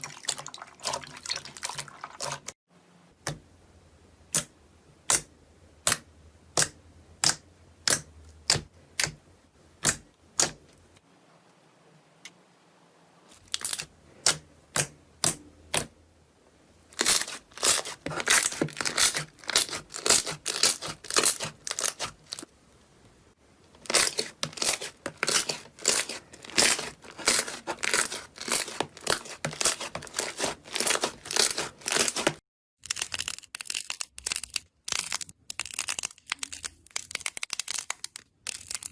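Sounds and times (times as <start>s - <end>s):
slime popping and crackling: 17.0s - 22.5s, 23.9s - 38.9s.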